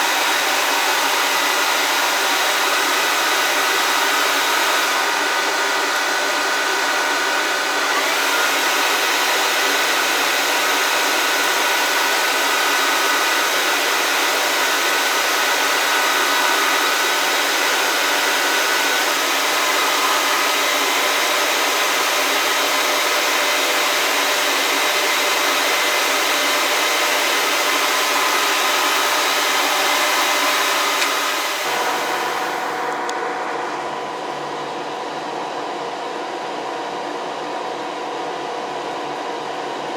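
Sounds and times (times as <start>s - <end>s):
hot air gun blowing: 0.0s - 22.4s, 26.0s - 33.1s.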